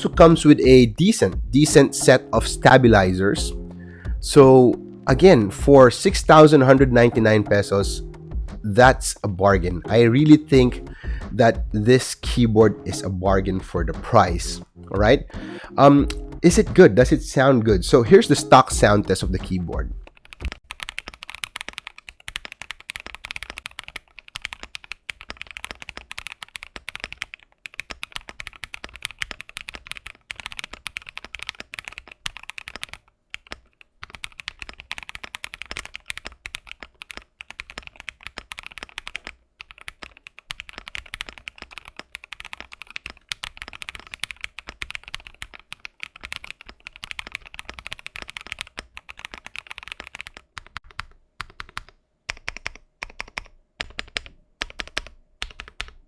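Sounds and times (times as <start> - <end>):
mechanical keyboard typing: 18.3 - 56.0.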